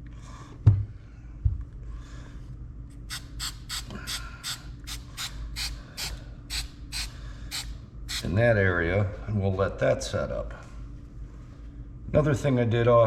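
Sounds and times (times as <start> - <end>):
aerosol can spraying in bursts: 3.1 - 8.3.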